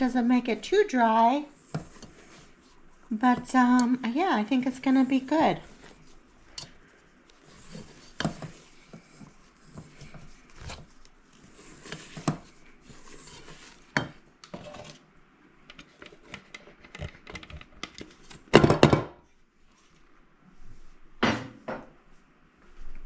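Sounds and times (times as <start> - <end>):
utensil scraping a mixing bowl: 0.0 - 15.0.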